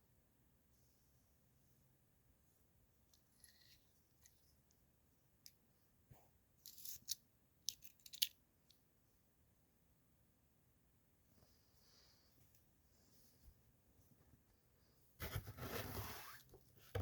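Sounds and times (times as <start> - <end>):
short scrape: 15.2 - 16.5.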